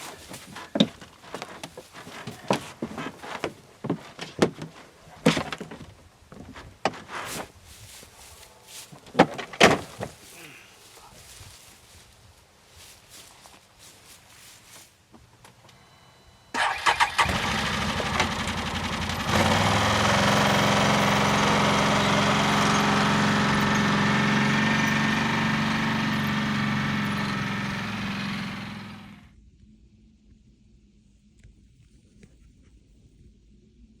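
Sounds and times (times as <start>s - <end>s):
engine cranking and starting: 16.5s - 29.3s
engine running steadily: 16.6s - 29.4s.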